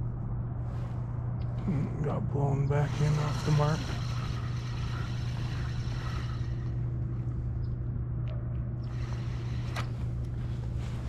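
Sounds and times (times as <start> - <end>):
electric motor humming: 2.6 - 7.4, 8.8 - 10.4.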